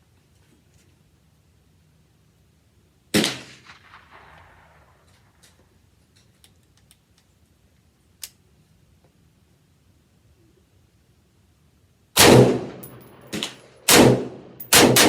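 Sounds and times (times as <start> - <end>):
rifle shot: 3.2 - 5.6, 12.2 - 15.0.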